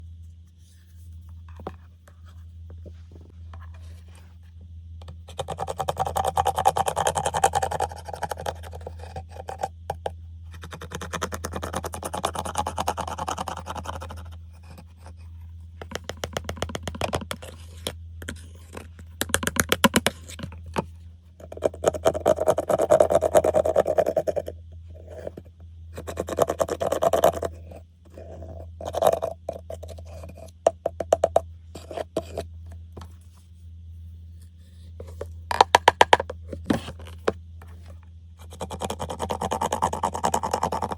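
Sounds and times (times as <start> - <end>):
low hum: 0.0 - 5.3, 26.8 - 38.5.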